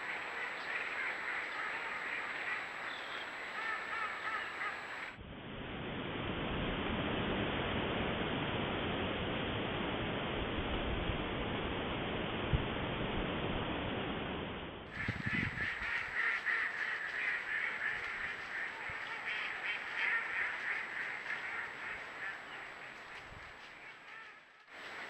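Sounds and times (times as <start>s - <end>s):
ducks quacking: 0.0s - 5.2s, 14.9s - 25.0s
steady rushing noise: 0.0s - 25.0s.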